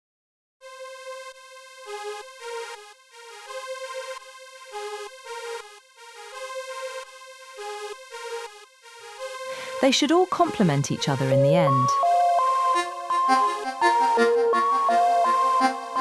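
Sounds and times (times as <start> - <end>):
synthesizer melody: 9.6 - 16.0.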